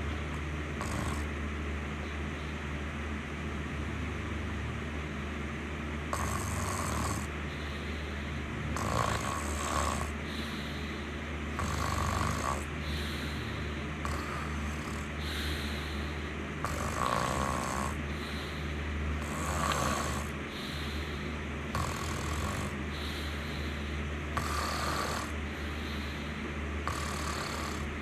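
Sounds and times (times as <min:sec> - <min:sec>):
steady low hum: 0:00.0 - 0:28.0
person snoring: 0:00.8 - 0:01.3, 0:06.1 - 0:28.0.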